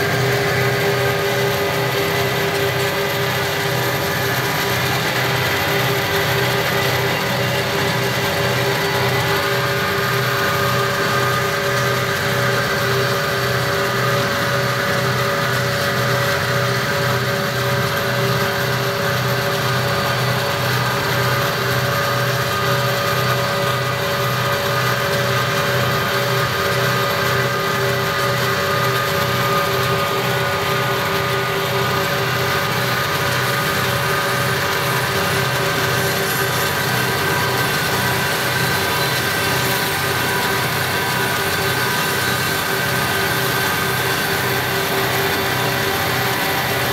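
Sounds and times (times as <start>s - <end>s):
diesel locomotive droning: 0.0s - 46.9s.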